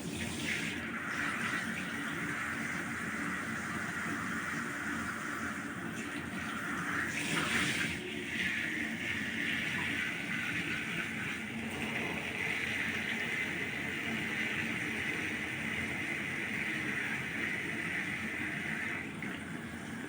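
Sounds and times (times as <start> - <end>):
shower water spraying: 6.6 - 20.0.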